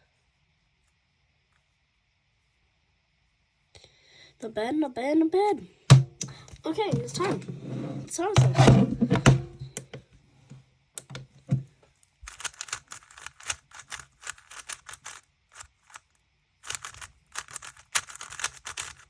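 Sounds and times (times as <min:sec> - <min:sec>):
puzzle cube plastic clicking: 0:12.2 - 0:19.0.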